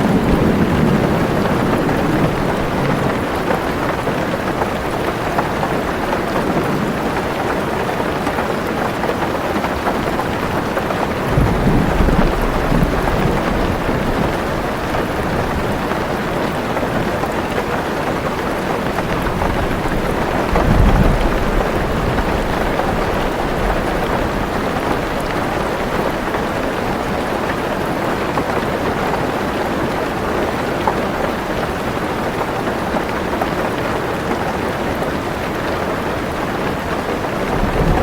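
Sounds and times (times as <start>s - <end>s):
thunder rolling: 0.0s - 5.0s, 9.8s - 16.2s, 18.3s - 26.9s, 37.2s - 38.0s
heavy rain on a car roof: 0.0s - 38.0s.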